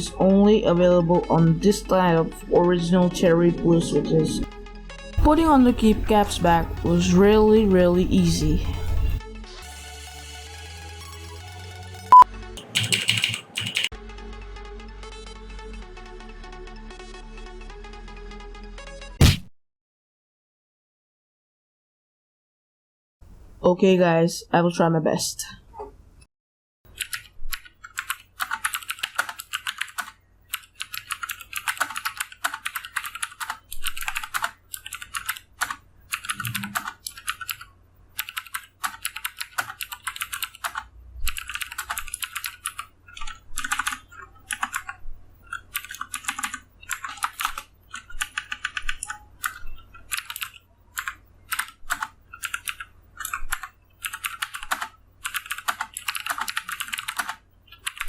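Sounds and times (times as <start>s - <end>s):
fast clicky keyboard typing: 12.1s - 13.9s, 26.9s - 58.0s.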